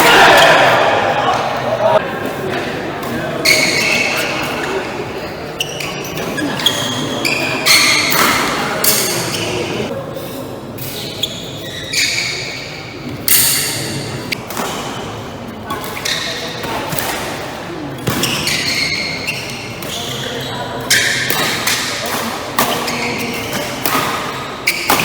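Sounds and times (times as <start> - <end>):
echoing spectator chatter: 0.0 - 25.0
shoes squeaking on court: 3.0 - 13.1, 15.7 - 17.2, 18.0 - 25.0
racket hitting shuttlecock: 5.8 - 9.8, 13.2 - 19.2, 20.9 - 25.0.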